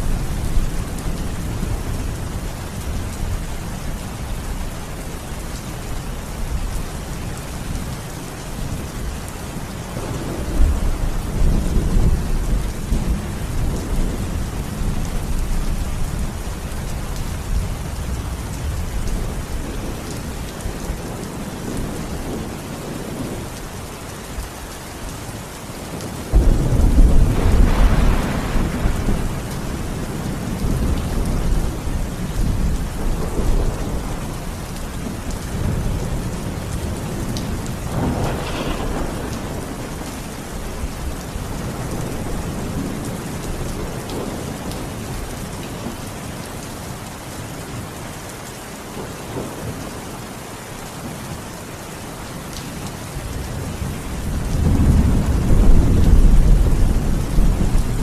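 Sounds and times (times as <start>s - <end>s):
heavy rain: 0.0s - 58.0s
thunder rumbling: 9.9s - 23.6s, 25.9s - 45.2s, 53.2s - 58.0s
sharp thunder clap: 26.3s - 29.6s, 37.9s - 40.1s.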